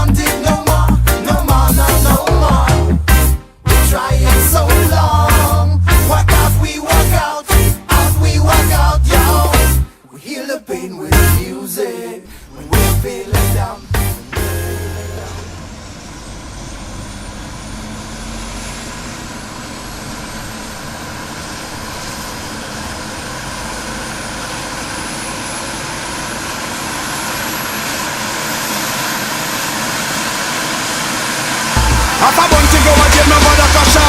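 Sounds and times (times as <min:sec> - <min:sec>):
rising whoosh: 0:31.6 - 0:34.0.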